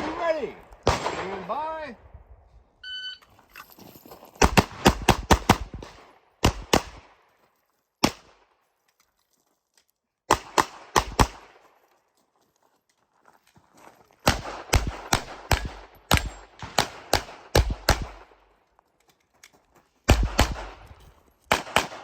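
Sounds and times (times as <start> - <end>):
pistol shots: 0.8 - 1.6, 4.4 - 7.2, 8.0 - 8.4, 10.3 - 11.6, 14.2 - 18.4, 20.1 - 20.9, 21.5 - 22.0
shot timer beep: 2.8 - 3.3.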